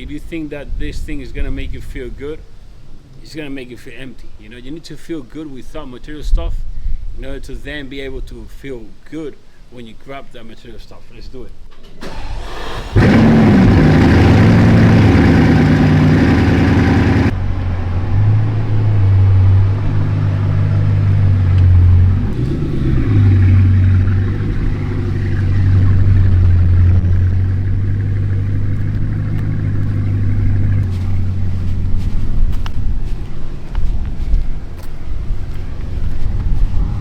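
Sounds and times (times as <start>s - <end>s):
car engine starting and running: 12.0s - 33.8s.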